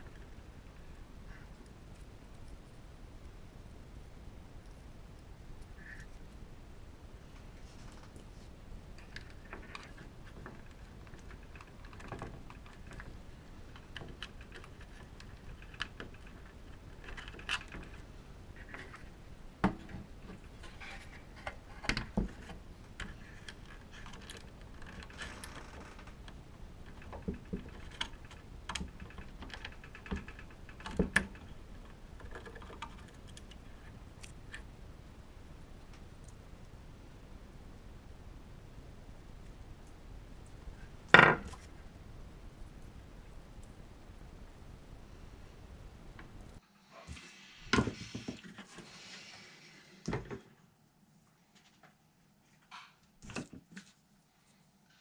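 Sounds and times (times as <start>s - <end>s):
small parts clicking and tapping: 8.9s - 19.1s, 19.7s - 34.7s.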